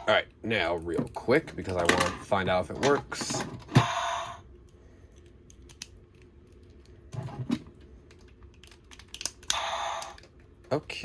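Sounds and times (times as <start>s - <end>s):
hard plastic toy clicking: 8.6s - 10.3s.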